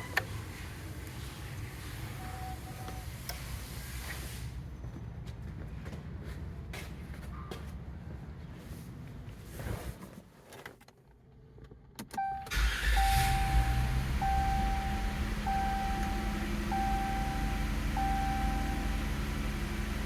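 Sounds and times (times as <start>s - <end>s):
car engine starting and idling: 11.4s - 20.0s
ignition clicks: 12.0s - 19.2s
warning chime beeping: 12.2s - 19.4s.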